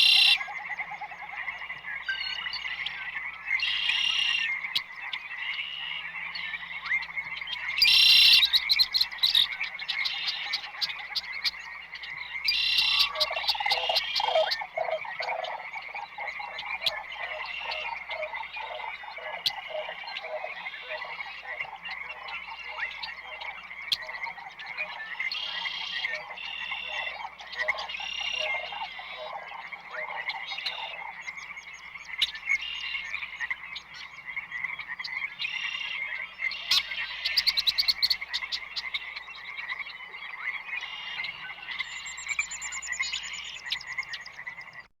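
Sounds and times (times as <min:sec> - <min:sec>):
frogs croaking: 0:00.0 - 0:44.9.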